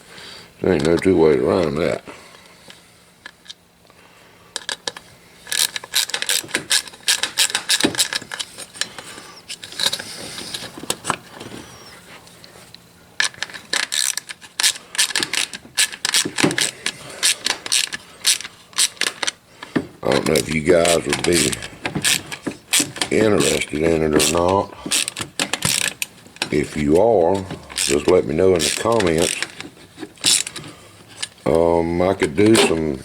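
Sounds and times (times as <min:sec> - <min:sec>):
ratchet wrench clicking: 0:05.5 - 0:08.5, 0:13.2 - 0:19.3, 0:20.4 - 0:29.6, 0:30.2 - 0:31.3.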